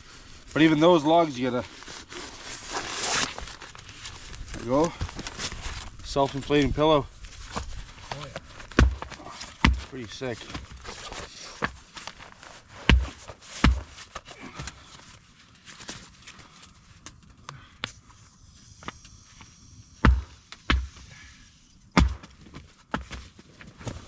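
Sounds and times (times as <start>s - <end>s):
rustling: 0.0s - 17.3s
heavy dull thumps: 8.7s - 9.9s, 12.8s - 14.0s, 20.0s - 21.0s, 21.9s - 23.1s.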